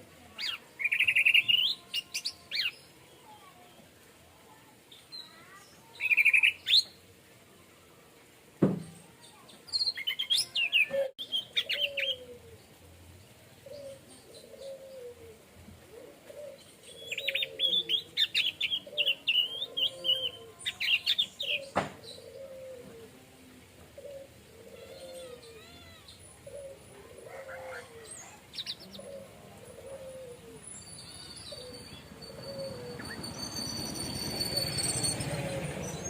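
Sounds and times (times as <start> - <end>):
sharp knock: 8.6 - 9.0, 21.7 - 22.0.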